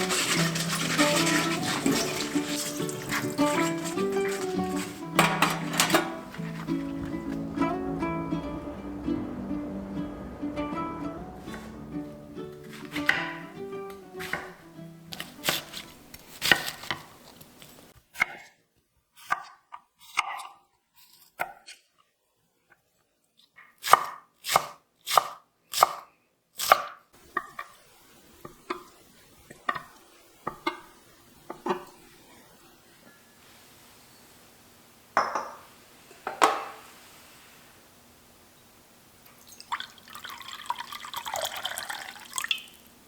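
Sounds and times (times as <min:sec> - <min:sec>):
knife chopping on cutting board: 0:12.7 - 0:13.4, 0:14.2 - 0:17.1.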